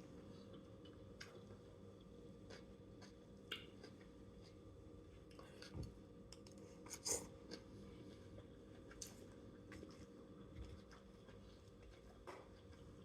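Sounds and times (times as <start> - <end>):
soft chewing: 0.0 - 13.0.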